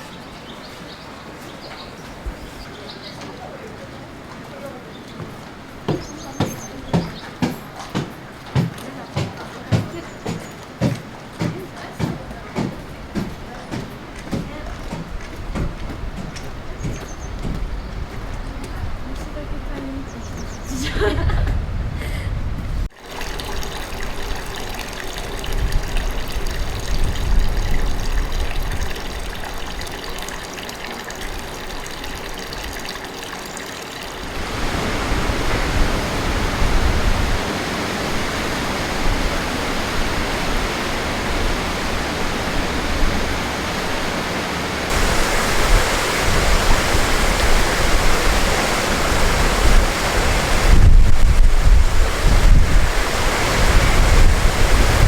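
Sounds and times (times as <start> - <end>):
water rushing and splashing: 0.0 - 19.2, 22.8 - 55.0
wind buffeting on microphone: 14.3 - 22.9, 25.2 - 29.8, 34.2 - 55.0.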